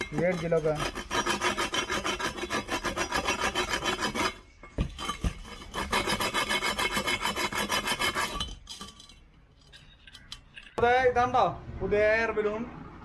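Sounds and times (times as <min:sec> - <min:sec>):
rasping scrubbing of rust on metal: 0:00.0 - 0:10.8.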